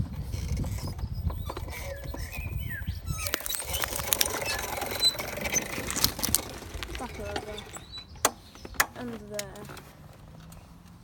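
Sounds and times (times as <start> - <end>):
tyre crunching stone and glass: 3.1 - 7.9.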